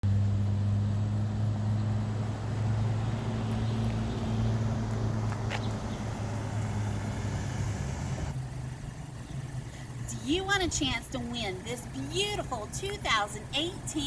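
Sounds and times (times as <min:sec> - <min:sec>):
car engine running: 0:00.0 - 0:14.0.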